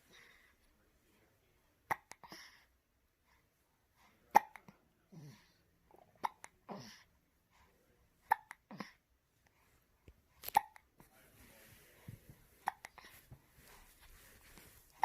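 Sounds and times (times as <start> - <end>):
baby hiccuping: 1.9 - 2.5, 4.3 - 4.7, 5.9 - 7.0, 8.2 - 9.0, 10.4 - 10.9, 12.6 - 13.1
baby soft breathy sound: 11.0 - 15.0.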